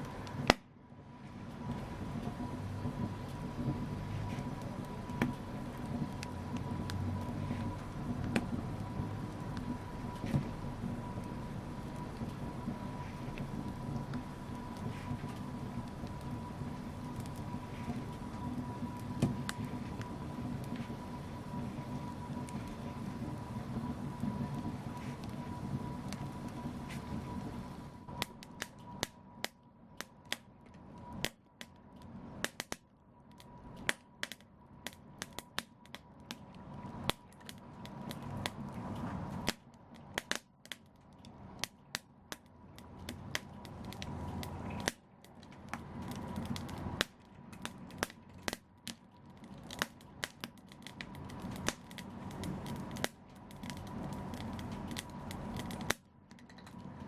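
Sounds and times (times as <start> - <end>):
low rush of flames: 0.0 - 57.0
wood fire crackling: 0.0 - 57.0
sharp pops and snaps: 0.1 - 0.7, 28.1 - 56.9.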